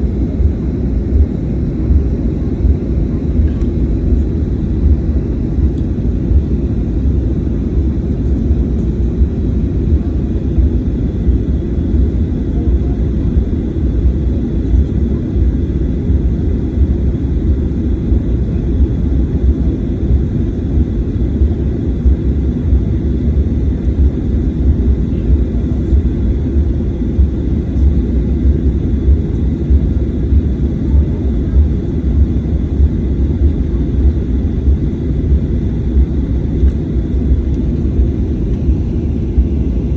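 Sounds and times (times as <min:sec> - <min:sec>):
airplane cabin engine rumble: 0:00.0 - 0:39.9.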